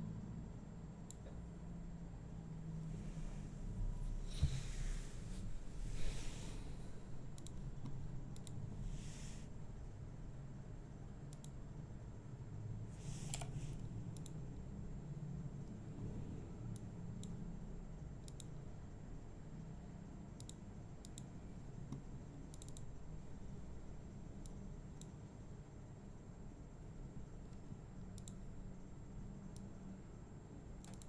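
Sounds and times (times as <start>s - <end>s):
low steady hum: 0.0s - 31.0s
computer mouse clicks: 1.1s - 1.4s, 7.3s - 8.9s, 11.3s - 11.6s, 13.0s - 14.7s, 16.7s - 17.4s, 18.2s - 18.6s, 20.4s - 22.9s, 24.4s - 25.2s, 27.4s - 28.5s, 29.5s - 29.8s, 30.8s - 31.0s.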